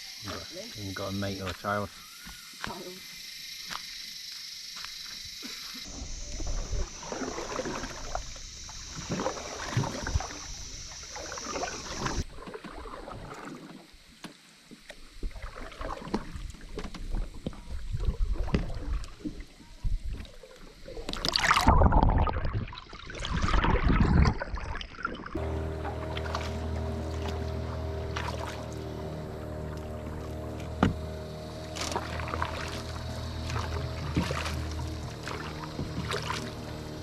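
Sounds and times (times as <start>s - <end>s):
paddles splashing in water: 4.9s - 37.0s
rushing water surge: 5.8s - 13.8s, 21.1s - 37.0s.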